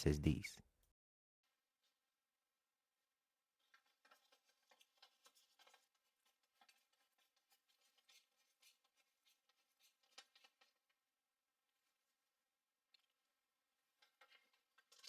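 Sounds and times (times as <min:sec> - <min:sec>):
faint clicks and scratches: 0:03.7 - 0:11.0, 0:13.9 - 0:15.0.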